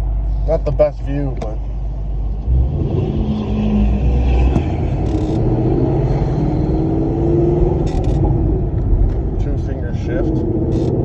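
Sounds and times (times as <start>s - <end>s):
car engine accelerating in cabin: 0.0s - 11.0s.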